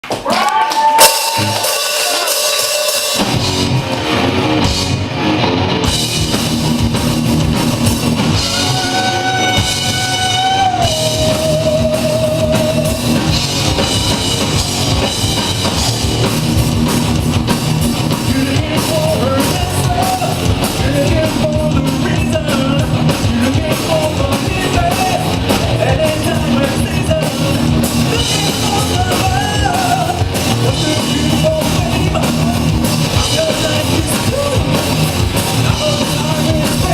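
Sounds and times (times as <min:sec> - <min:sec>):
rock band playing: 0:00.0 - 0:36.9
person singing: 0:08.4 - 0:13.1, 0:18.2 - 0:36.9.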